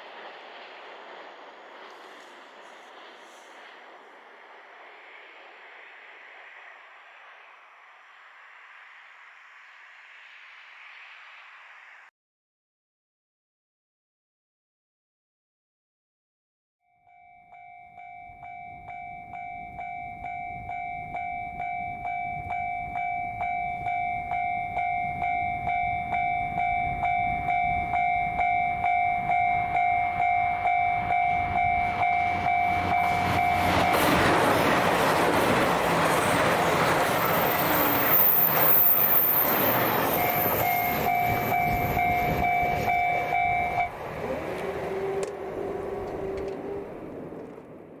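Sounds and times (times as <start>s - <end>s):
freight train passing: 0.0s - 12.1s, 17.1s - 48.0s.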